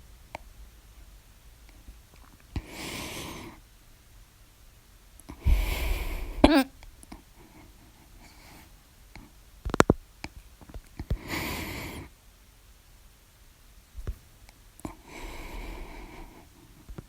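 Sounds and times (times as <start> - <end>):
breath: 2.6 - 3.6, 5.3 - 6.6, 7.4 - 8.7, 11.1 - 12.1, 14.9 - 16.9
person hiccuping: 6.4 - 6.8.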